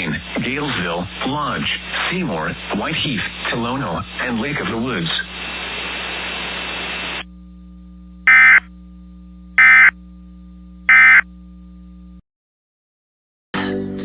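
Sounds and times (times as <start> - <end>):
radio static: 0.0 - 7.4, 8.2 - 8.7, 10.9 - 11.3
low steady hum: 0.0 - 12.2.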